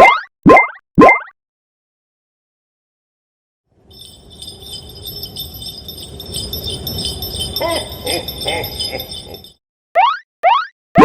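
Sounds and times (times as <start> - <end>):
jingling bell-like ringing: 3.8 - 9.6
short warbling tones: 10.0 - 11.0.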